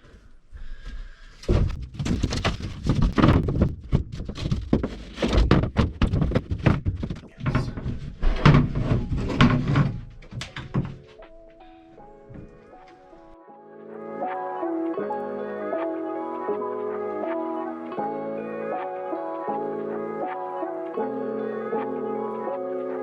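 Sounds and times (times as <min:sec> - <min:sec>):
thuds against van panels: 0:01.4 - 0:11.0.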